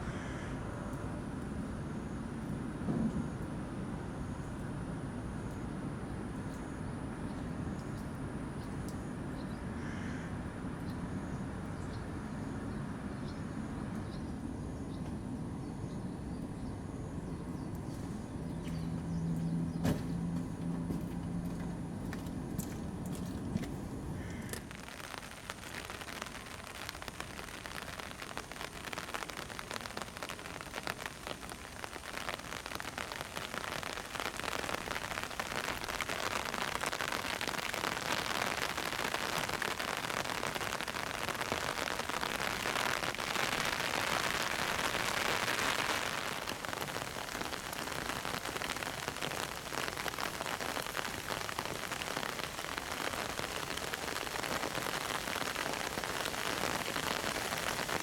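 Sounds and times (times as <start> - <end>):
heavy rain pouring: 22.9 - 58.0.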